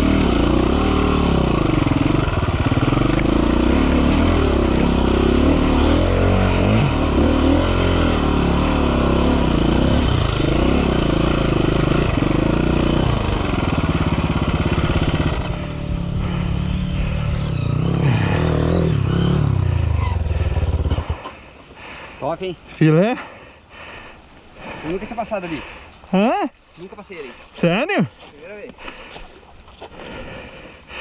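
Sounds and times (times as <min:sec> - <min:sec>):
dirt bike engine revving: 0:00.0 - 0:21.5.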